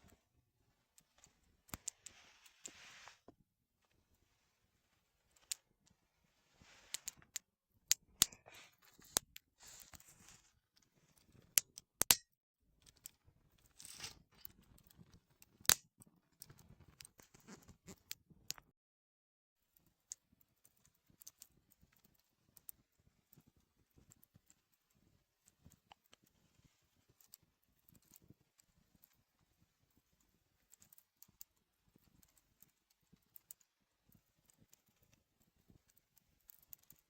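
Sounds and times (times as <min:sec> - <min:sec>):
close rustling and crinkling: 0:00.0 - 0:07.3, 0:08.3 - 0:11.5
sharp clicks and taps: 0:11.6 - 0:12.2.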